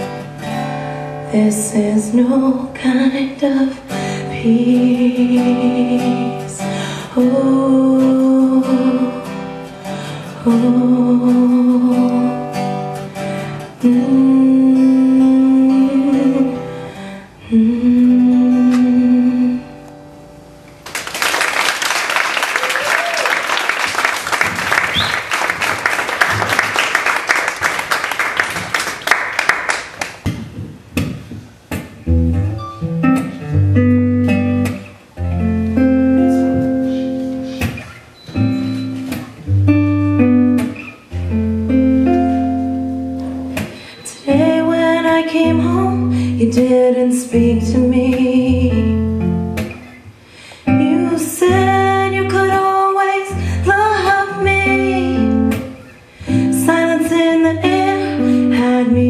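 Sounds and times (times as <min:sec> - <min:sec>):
live guitar music: 0:00.0 - 0:21.2, 0:23.8 - 0:59.0
audience applause: 0:20.8 - 0:30.2.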